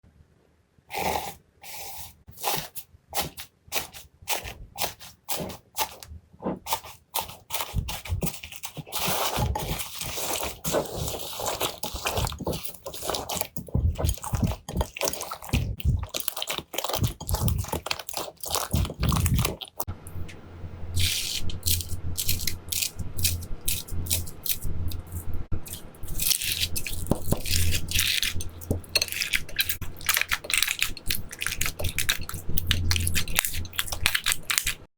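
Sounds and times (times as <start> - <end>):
slime crackling and popping: 7.2 - 19.9, 25.7 - 34.8
low steady hum: 7.7 - 34.9.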